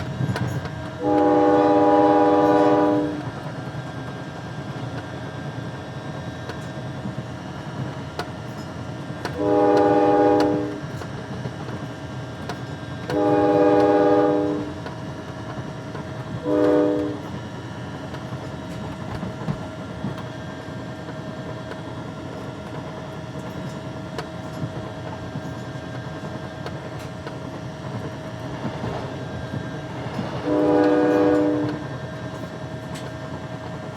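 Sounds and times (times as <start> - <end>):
train passing with low rumble: 0.0 - 33.9
train air horn chord: 1.0 - 3.2, 9.4 - 10.8, 13.1 - 14.8, 16.4 - 17.3, 30.4 - 31.8.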